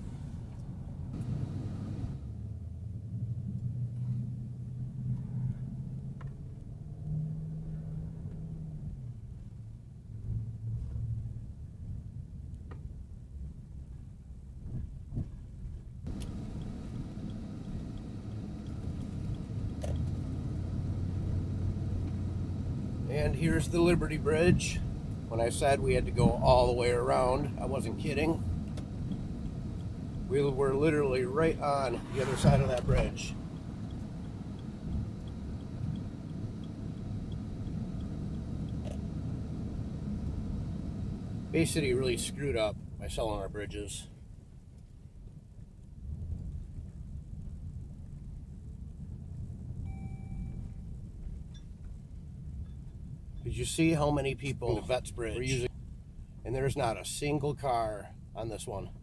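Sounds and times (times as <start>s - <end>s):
truck engine and road rumble: 0.0s - 59.0s
faint clicks: 0.5s - 2.2s, 16.1s - 22.9s, 31.9s - 40.4s
faint regular ticking: 0.6s - 2.2s, 16.1s - 42.2s.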